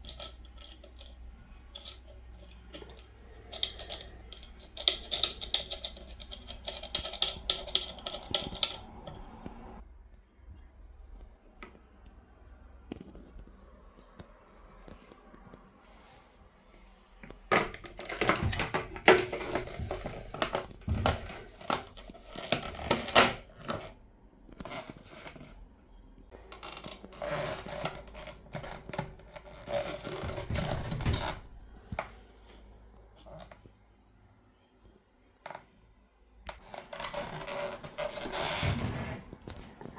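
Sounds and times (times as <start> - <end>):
handling clicks and knocks: 0.0 - 9.5, 17.2 - 24.0.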